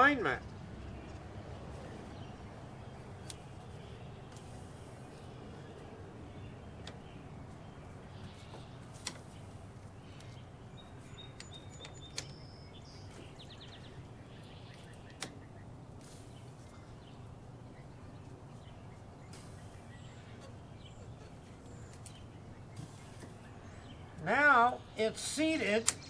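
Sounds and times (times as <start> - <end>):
birds chirping: 0.0 - 26.0
steady low hum: 0.0 - 26.0
sharp clicks: 15.0 - 15.4, 25.8 - 26.0.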